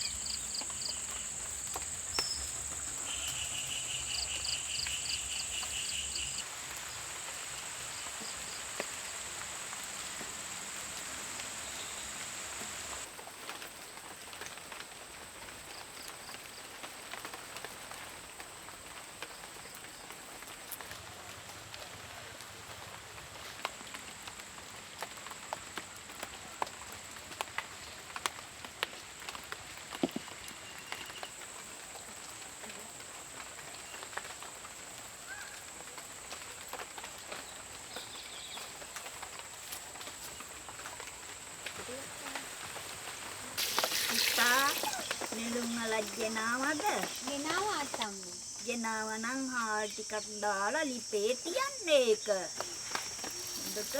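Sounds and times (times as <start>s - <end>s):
cricket chirps: 0.0s - 13.1s, 29.3s - 53.9s
high insect drone: 0.0s - 13.1s, 41.8s - 53.9s.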